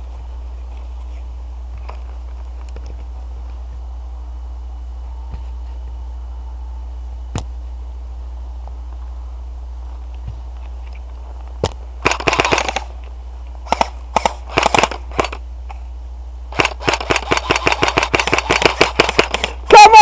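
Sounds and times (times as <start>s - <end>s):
low steady hum: 0.0s - 20.0s
airsoft rifles firing: 12.0s - 12.9s, 13.6s - 15.4s, 16.5s - 19.6s.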